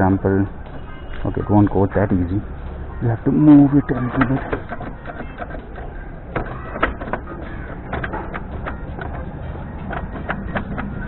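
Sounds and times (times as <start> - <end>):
motorcycle gearbox clicks and knocks: 3.9 - 11.0.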